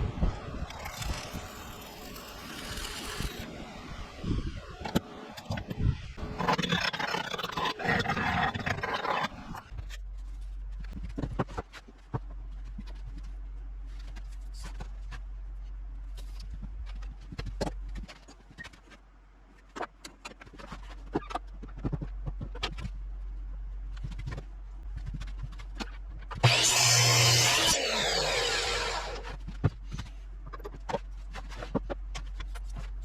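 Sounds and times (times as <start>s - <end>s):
low electrical hum: 9.5s - 33.0s.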